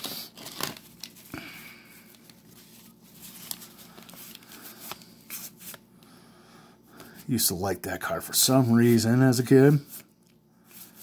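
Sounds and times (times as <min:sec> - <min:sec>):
cards rustling: 0:00.0 - 0:05.8.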